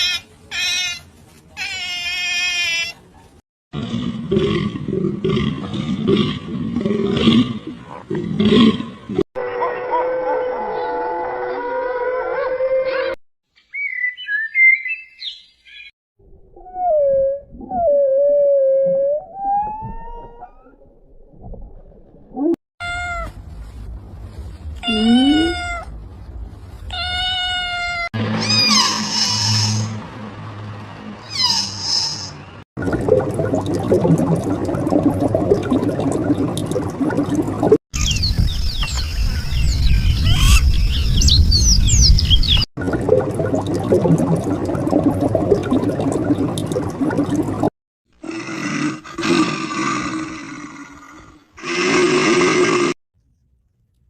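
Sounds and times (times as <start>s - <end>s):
low rumble: 23.3s - 26.9s
cat meowing: 24.8s - 25.9s, 26.9s - 28.8s
birds chirping: 38.0s - 42.7s.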